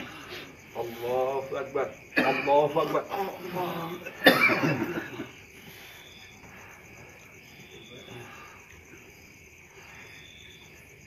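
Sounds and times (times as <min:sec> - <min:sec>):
insect chirping: 0:00.0 - 0:11.0.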